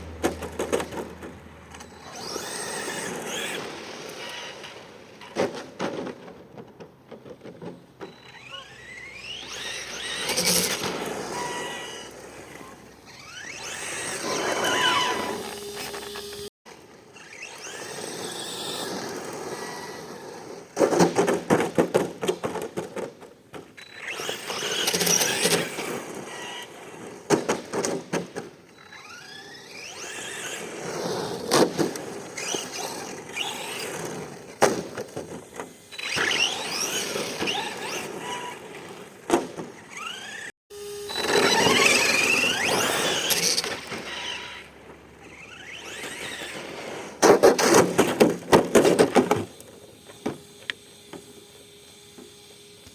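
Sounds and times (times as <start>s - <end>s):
electric motor whining: 8.1s - 16.5s, 17.2s - 20.8s, 23.8s - 27.0s, 28.7s - 39.2s, 39.8s - 47.2s, 48.8s - 52.9s
toy truck clattering and knocking: 47.2s - 49.7s.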